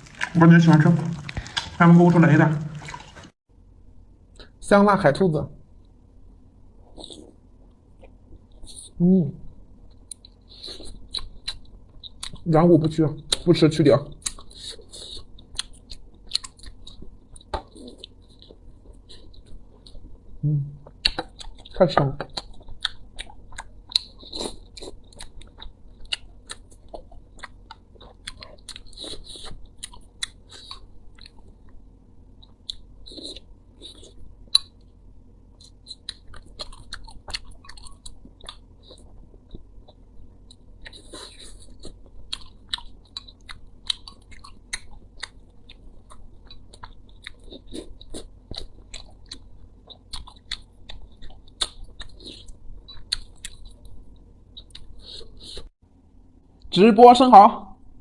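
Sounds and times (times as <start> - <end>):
chewing and biting food: 0.0 - 3.4, 9.9 - 12.5, 14.1 - 55.7.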